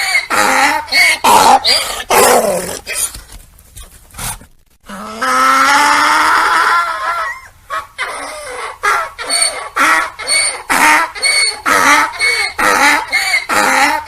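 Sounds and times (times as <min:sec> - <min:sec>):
donkey braying: 0:04.9 - 0:14.0.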